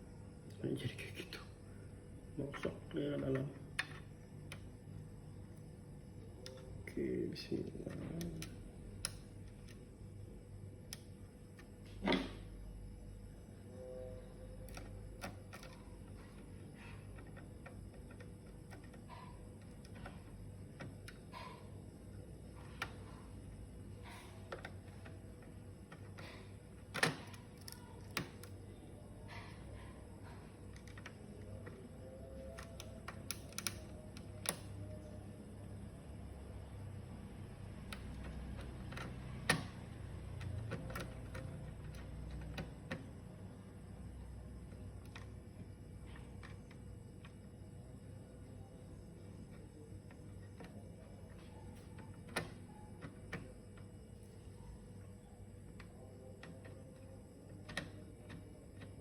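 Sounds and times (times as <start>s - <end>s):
faint low hum: 0.0s - 59.0s
small clicks of laptop parts: 29.3s - 35.0s.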